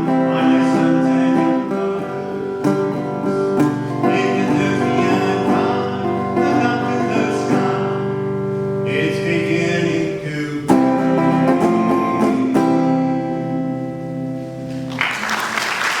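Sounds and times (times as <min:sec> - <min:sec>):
person singing: 0:00.0 - 0:13.9
strummed guitar chords: 0:00.0 - 0:15.1
audience applause: 0:14.9 - 0:16.0.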